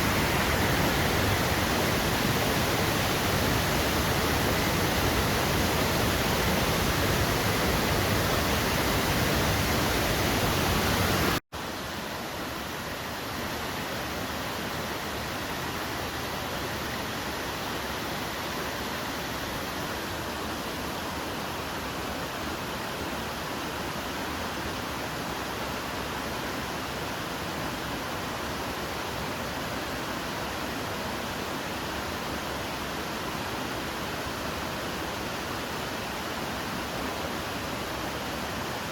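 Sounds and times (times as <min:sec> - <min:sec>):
waterfall rushing: 0:00.0 - 0:22.4.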